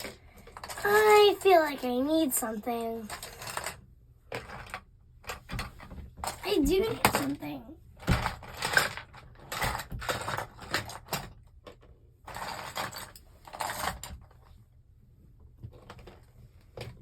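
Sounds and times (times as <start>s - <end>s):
plastic pieces clicking and rattling: 0.0s - 1.8s, 2.8s - 14.3s.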